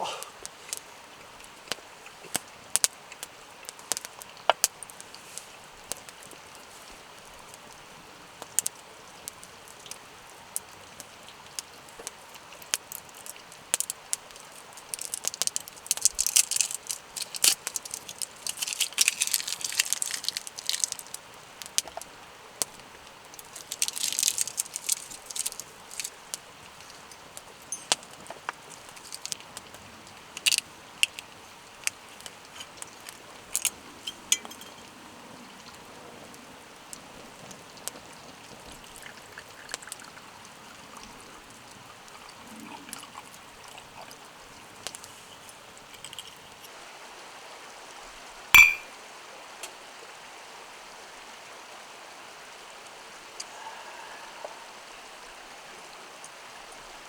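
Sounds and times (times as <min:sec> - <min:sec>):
campfire crackling: 0:00.0 - 0:42.4.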